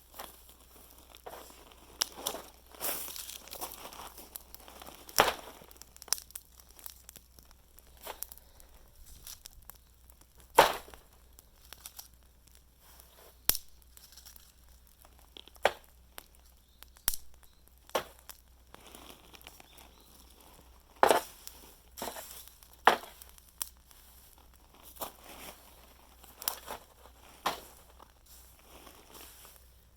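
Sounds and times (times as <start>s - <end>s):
bonfire crackling and popping: 0.0s - 29.9s.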